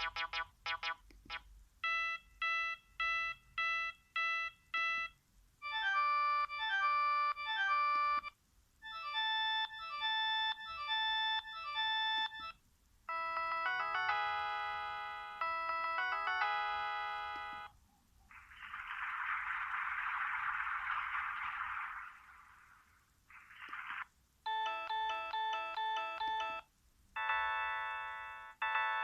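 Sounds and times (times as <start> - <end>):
melodic phone alert: 1.8 - 17.7, 24.5 - 29.0
phone ringtone tune: 1.8 - 17.7, 24.5 - 29.0.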